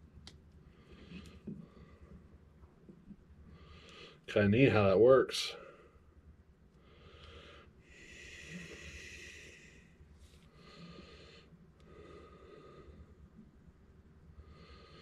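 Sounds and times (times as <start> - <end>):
soft slow breathing: 0.6 - 2.5, 3.4 - 4.3, 5.5 - 13.6, 14.2 - 15.0.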